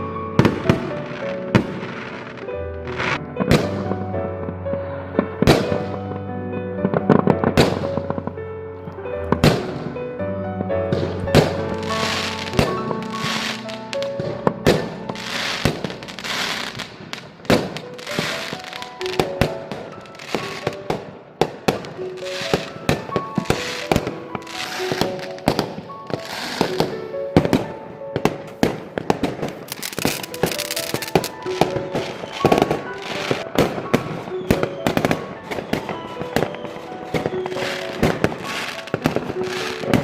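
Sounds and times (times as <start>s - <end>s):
fireworks bangs and crackles: 0.0s - 6.2s, 6.8s - 10.1s, 10.9s - 40.0s
melodic music: 0.0s - 40.0s
fireworks hissing: 11.0s - 27.7s, 28.6s - 40.0s.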